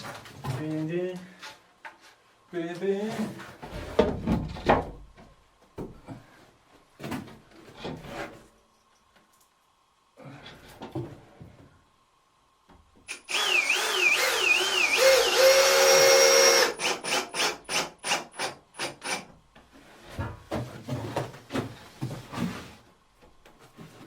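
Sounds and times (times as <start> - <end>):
drill motor whining: 13.1 - 19.2
drill trigger pulses: 13.1 - 19.2.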